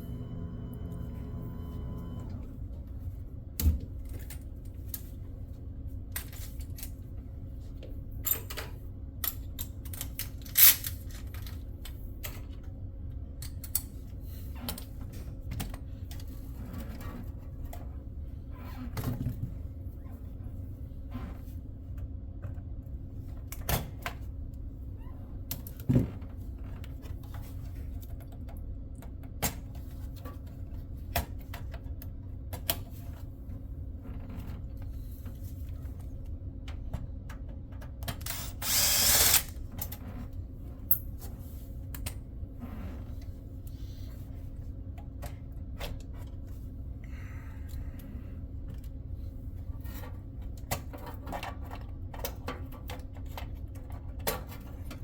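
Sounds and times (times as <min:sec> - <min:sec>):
low hum: 0:00.0 - 0:03.0
short whirring burst: 0:38.4 - 0:39.5.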